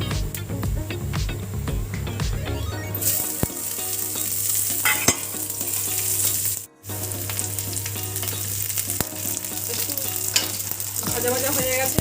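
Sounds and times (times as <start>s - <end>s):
onion sizzling in hot oil: 3.0s - 12.0s
spoon clicking against pan: 10.3s - 10.6s.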